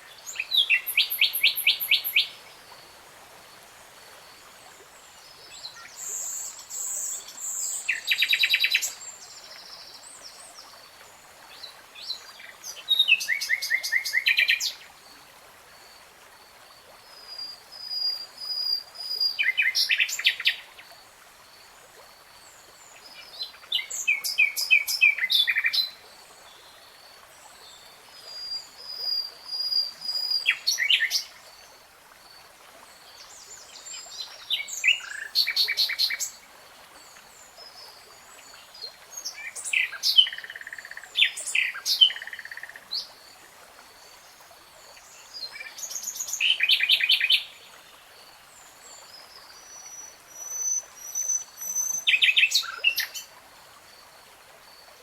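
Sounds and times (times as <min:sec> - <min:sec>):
songbird singing trilled phrases: 0:49.6 - 0:53.3.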